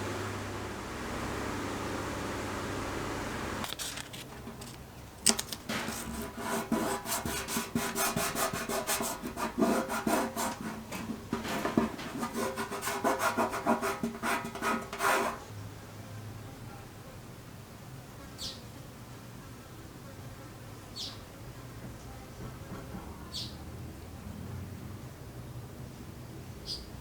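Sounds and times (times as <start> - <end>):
steady low hum: 0.0 - 3.7
abrasive rubbing on metal: 5.7 - 15.5.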